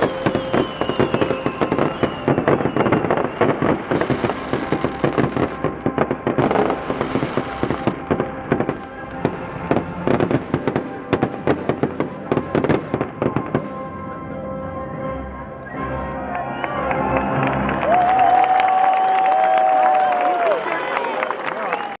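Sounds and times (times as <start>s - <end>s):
fireworks barrage: 0.0s - 13.9s.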